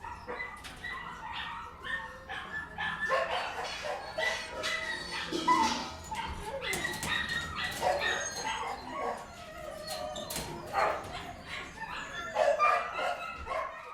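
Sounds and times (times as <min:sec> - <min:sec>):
dogs barking and whimpering: 0:00.0 - 0:13.9.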